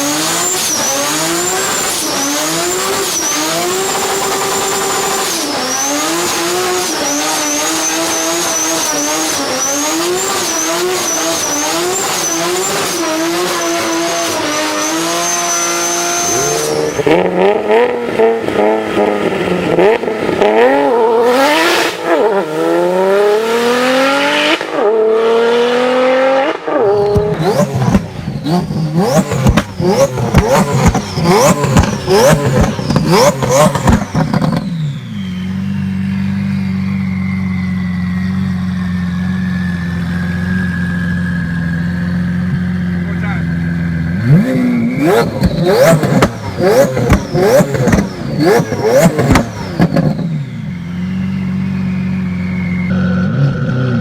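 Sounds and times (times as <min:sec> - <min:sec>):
car engine revving: 0:00.0 - 0:54.0.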